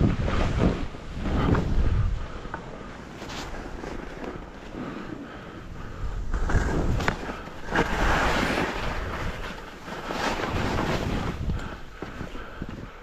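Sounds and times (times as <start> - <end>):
wind rumbling on microphone: 0.0 - 13.0
skis scraping over snow: 2.9 - 12.6.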